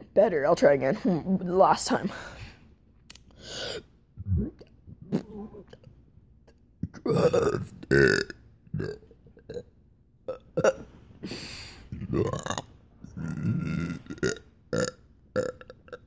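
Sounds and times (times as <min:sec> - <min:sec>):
person burping: 0:04.2 - 0:05.8, 0:06.8 - 0:09.7, 0:10.3 - 0:10.9, 0:11.9 - 0:16.0.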